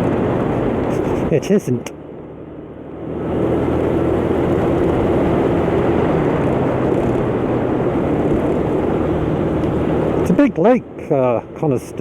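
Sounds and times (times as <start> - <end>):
wind on microphone: 0.0 - 1.4
scooter engine running: 3.2 - 12.0.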